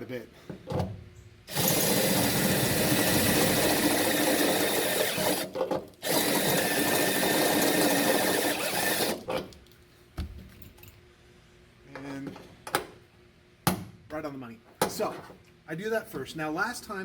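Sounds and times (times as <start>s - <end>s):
electric drill drilling metal: 1.5s - 9.3s.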